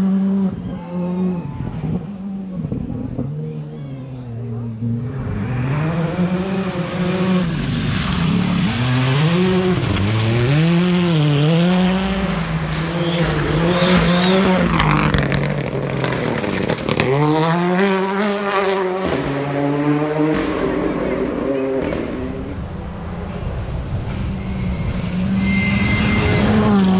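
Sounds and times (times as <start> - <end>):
rally car engine revving: 4.6 - 26.9
sharp crackles: 12.3 - 18.1.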